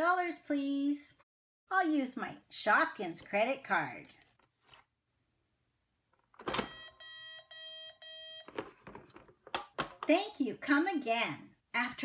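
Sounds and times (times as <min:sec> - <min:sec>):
toy cash register beeps: 0:06.5 - 0:08.8.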